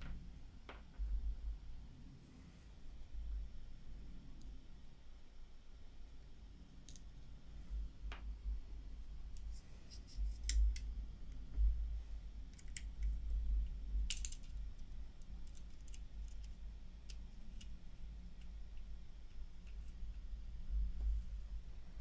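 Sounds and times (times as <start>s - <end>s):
small plastic parts clicking: 9.4s - 10.9s, 12.5s - 14.6s, 15.2s - 17.8s.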